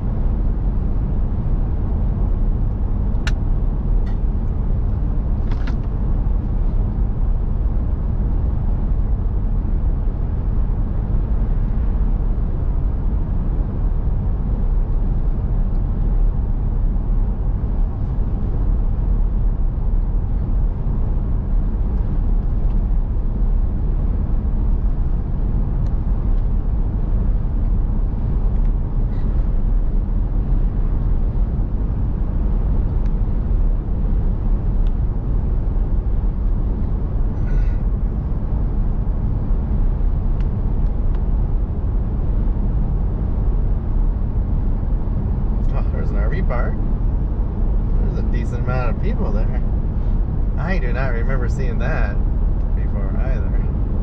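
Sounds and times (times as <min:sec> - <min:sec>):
car engine and tyre noise: 0:00.0 - 0:54.0.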